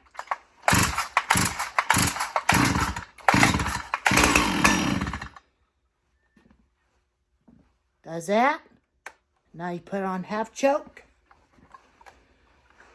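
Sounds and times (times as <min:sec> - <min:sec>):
chainsaw engine firing in bursts: 0:00.1 - 0:05.4.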